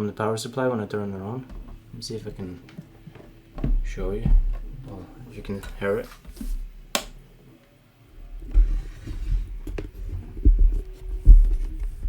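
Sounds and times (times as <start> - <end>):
low thumps: 1.1 - 7.4, 8.1 - 12.0
switch click: 6.9 - 7.2.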